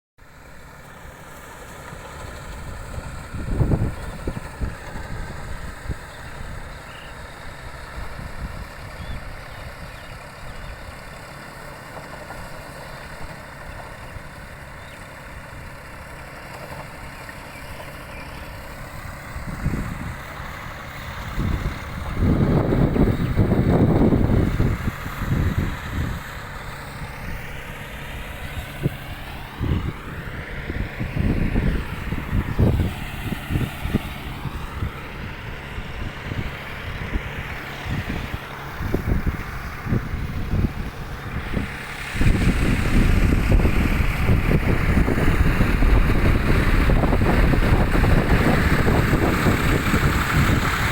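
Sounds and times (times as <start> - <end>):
ploughing machine engine running: 0.2 - 50.9
wind gusting against microphone: 2.5 - 6.7, 18.8 - 50.9.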